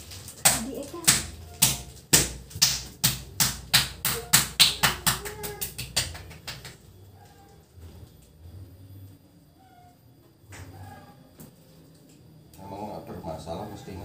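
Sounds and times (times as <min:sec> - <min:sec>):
hand slapping body: 0:00.4 - 0:06.8.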